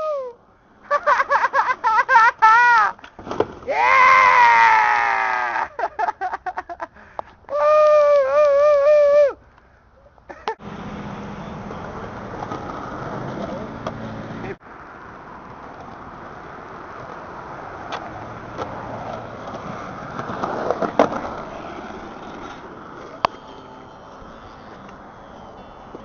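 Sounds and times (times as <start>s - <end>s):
skateboard wheels rolling on pavement: 0.6s - 9.5s, 10.1s - 26.0s
skateboard clacks: 17.8s - 23.4s.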